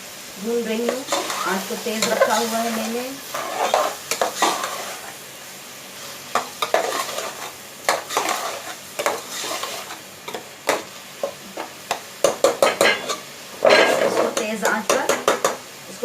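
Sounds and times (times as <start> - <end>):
food sizzling in oil: 0.0 - 16.0
utensil scraping and knocking pan: 0.9 - 2.5, 3.3 - 5.1, 6.4 - 15.6.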